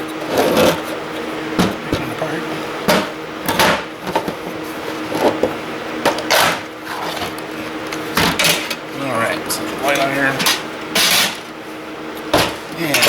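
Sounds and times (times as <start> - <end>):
metal parts clicking and clanking: 8.2 - 8.8.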